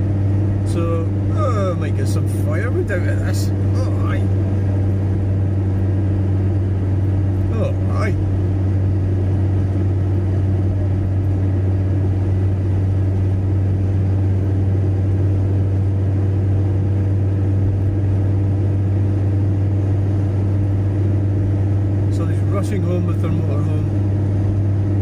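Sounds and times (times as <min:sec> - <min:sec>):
car engine hum in cabin: 0:00.0 - 0:25.0
road noise: 0:00.0 - 0:25.0.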